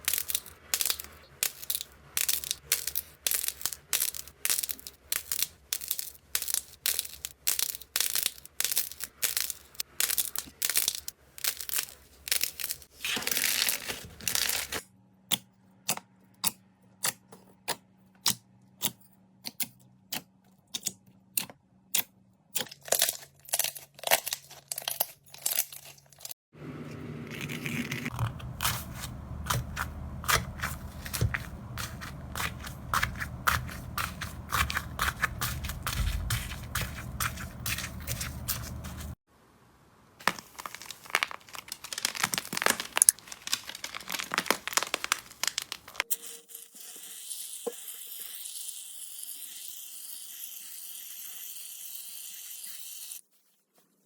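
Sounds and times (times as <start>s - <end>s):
slime clicking and crackling: 0.0s - 12.9s, 28.1s - 39.1s, 40.2s - 46.1s.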